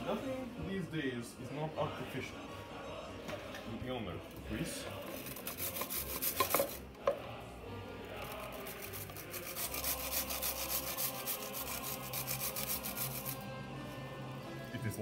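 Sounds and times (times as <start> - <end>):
background music: 0.0 - 15.0
rasping on a kitchen grater: 5.1 - 6.8, 8.3 - 13.4.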